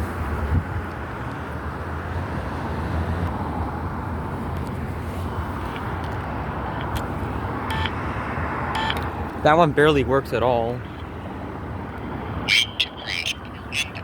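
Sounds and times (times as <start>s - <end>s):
wind noise: 0.0s - 1.0s
street traffic rumble: 0.0s - 14.0s.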